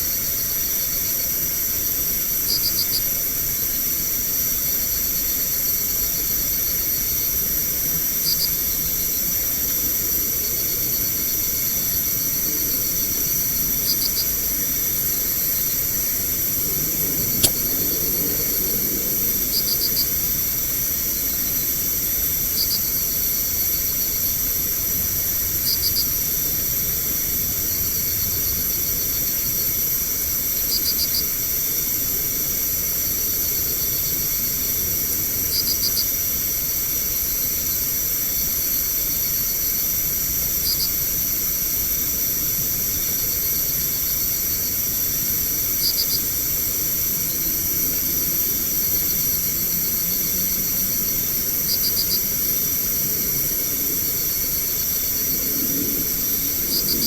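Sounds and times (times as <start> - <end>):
night insects trilling: 0.0 - 57.0
sharp click: 17.4 - 17.7.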